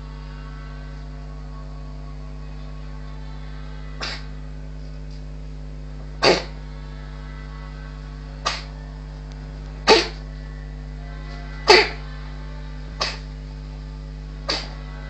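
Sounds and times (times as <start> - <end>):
cat sneezing: 4.0 - 4.3, 6.2 - 6.6, 8.4 - 8.7, 9.8 - 10.2, 11.6 - 12.0, 13.0 - 13.3, 14.5 - 14.8.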